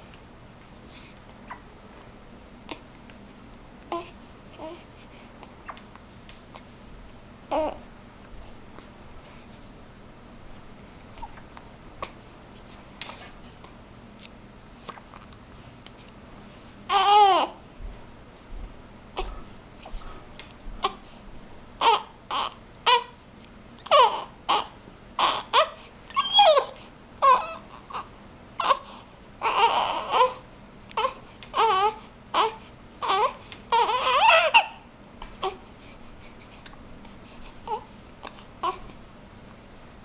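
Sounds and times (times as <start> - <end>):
newborn baby crying: 7.5 - 7.8, 16.9 - 17.6, 21.8 - 23.2, 23.8 - 35.7, 37.6 - 39.0.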